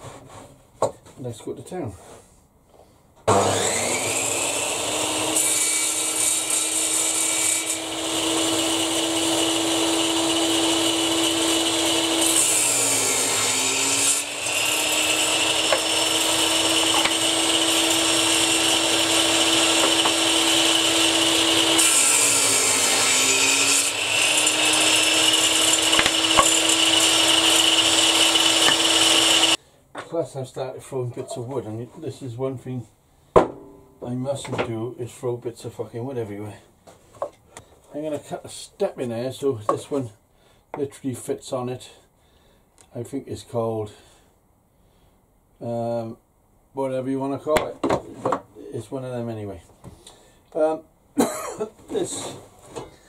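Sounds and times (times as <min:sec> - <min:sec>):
table saw cutting wood: 0:03.3 - 0:29.6.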